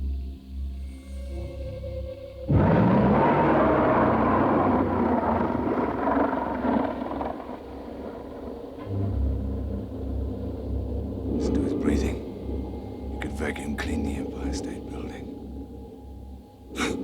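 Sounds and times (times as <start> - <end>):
background music: 0.0 - 6.1, 7.9 - 17.0
dinosaur roar: 2.5 - 10.2.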